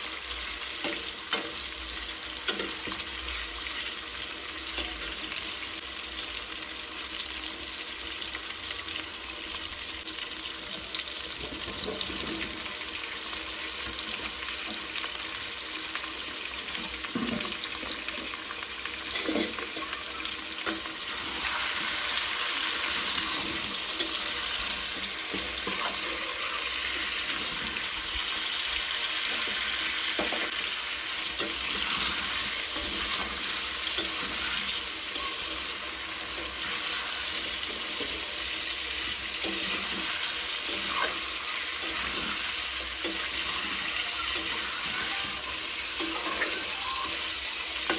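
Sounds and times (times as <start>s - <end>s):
food sizzling in hot oil: 0.0s - 47.9s.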